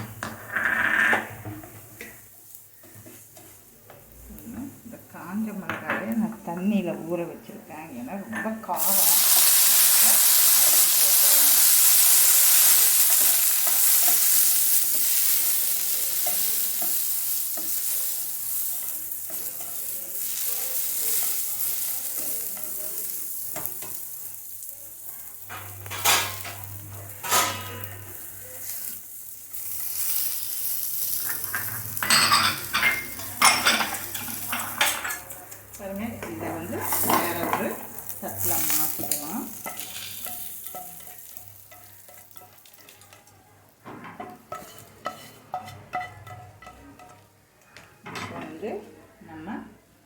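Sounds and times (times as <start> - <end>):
spices sizzling in hot oil: 0.4 - 47.4
spatula knocking and scraping pan: 36.1 - 43.2, 43.8 - 48.6.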